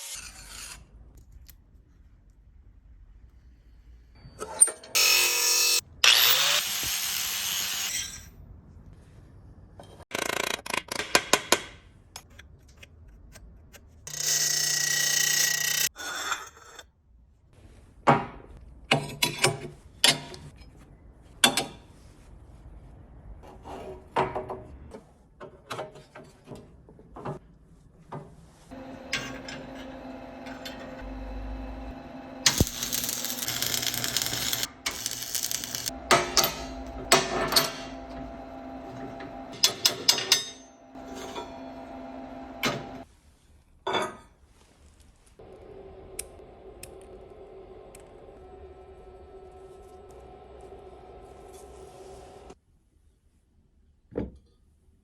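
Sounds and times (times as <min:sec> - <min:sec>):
power tool running: 0:05.0 - 0:08.0, 0:28.7 - 0:43.0.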